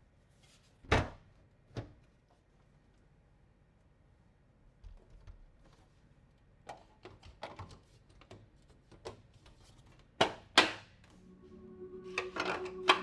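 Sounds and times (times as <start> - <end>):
background music: 11.1 - 13.0.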